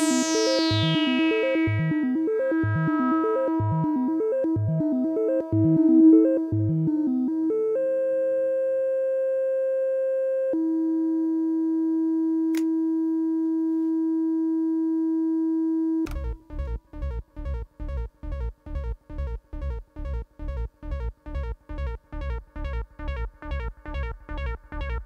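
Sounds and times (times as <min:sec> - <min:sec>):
synthesizer bass note pattern: 0:00.0 - 0:07.8, 0:16.1 - 0:25.0
synthesizer steady tone: 0:00.0 - 0:08.2, 0:16.1 - 0:25.0.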